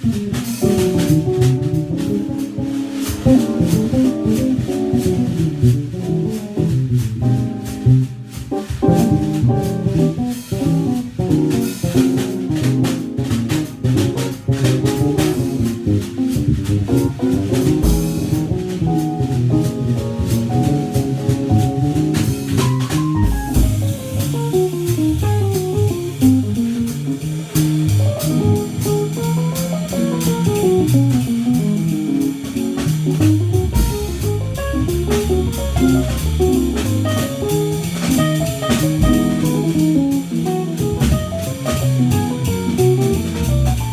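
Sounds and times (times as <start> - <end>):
drum kit and cymbals: 0.0 - 43.9
walking bass: 0.0 - 43.9
keyboard melody: 0.6 - 11.4, 12.0 - 26.5, 28.1 - 43.9.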